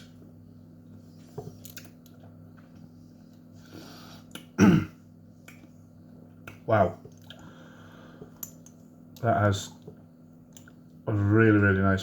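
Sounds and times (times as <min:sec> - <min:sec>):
lip smacks: 0:04.2 - 0:04.6, 0:05.4 - 0:05.7.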